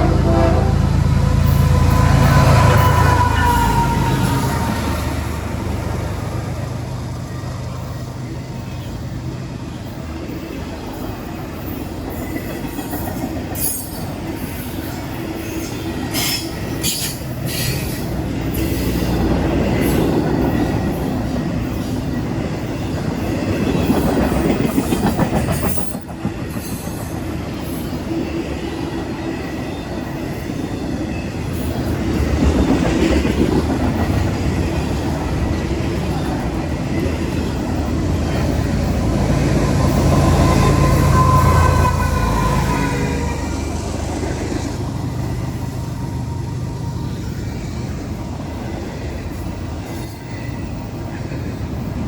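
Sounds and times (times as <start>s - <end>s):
train wheels rumbling on rails: 0.0s - 52.0s
high wheel squeals: 1.3s - 5.2s, 34.0s - 47.9s.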